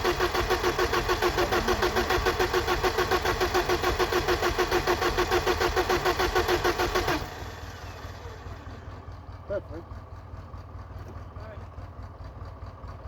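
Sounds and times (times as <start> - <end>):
car engine cranking: 0.0 - 9.7.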